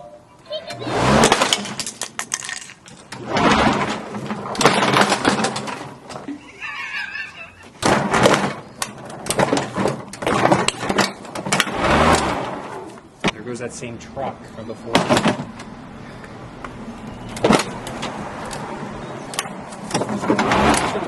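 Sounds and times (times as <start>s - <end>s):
lawnmower blade crunching plastic: 1.0s - 6.3s, 7.8s - 13.0s, 19.6s - 21.0s.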